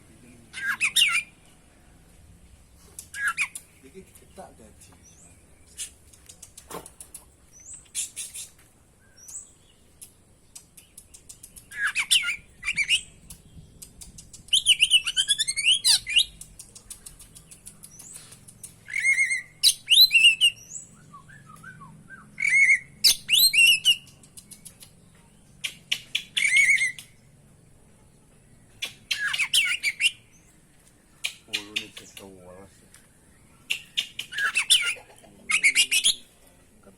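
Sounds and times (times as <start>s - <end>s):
bird singing whistles and trills: 10.8s - 16.9s, 17.6s - 24.9s, 25.6s - 27.2s, 28.7s - 30.5s, 33.3s - 36.3s.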